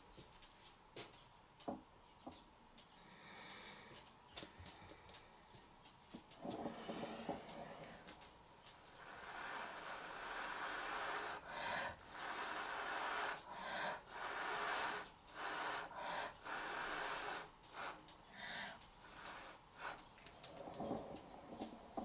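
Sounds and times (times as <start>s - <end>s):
handheld torch hissing: 6.4s - 20.6s.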